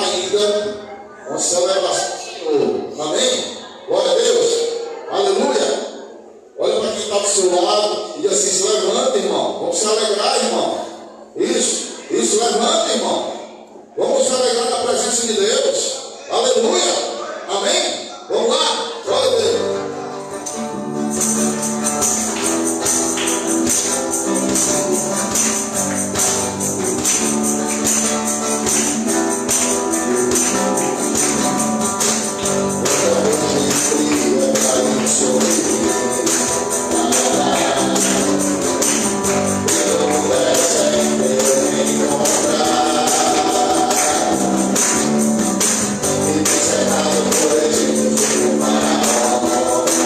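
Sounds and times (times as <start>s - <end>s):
gospel band playing: 0.0s - 0.9s, 18.8s - 50.0s
tambourine shaking: 20.5s - 50.0s
voices singing: 22.0s - 50.0s.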